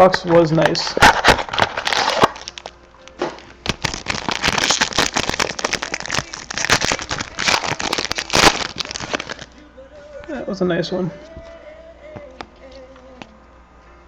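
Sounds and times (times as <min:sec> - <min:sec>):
packaging crackling and crinkling: 0:00.0 - 0:09.6.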